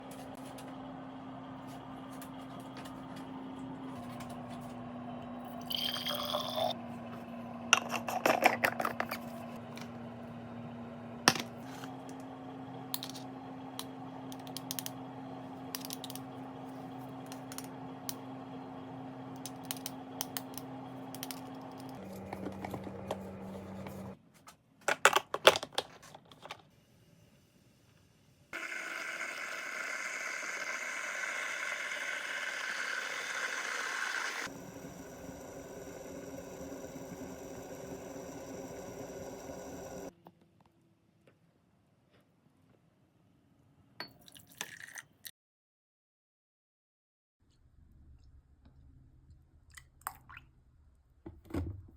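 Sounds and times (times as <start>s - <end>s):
espresso machine humming: 0.8s - 24.2s, 28.6s - 40.1s
cups clinking: 5.5s - 6.8s, 7.8s - 9.3s.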